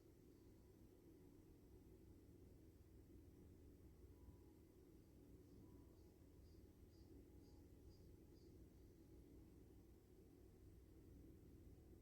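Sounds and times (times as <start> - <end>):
faint room hum: 0.0 - 12.0
faint high chirp: 5.4 - 8.9.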